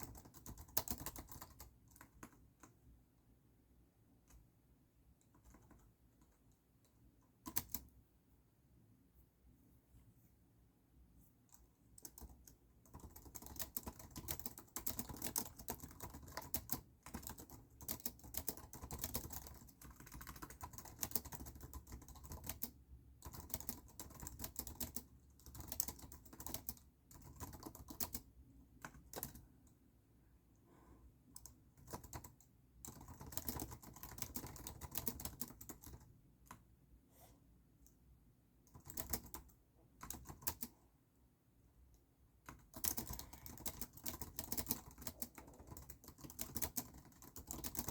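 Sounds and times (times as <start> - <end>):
typing on a computer keyboard: 0.0 - 2.8, 5.2 - 8.0, 11.5 - 29.8, 31.3 - 36.6, 38.6 - 40.8, 42.4 - 47.9.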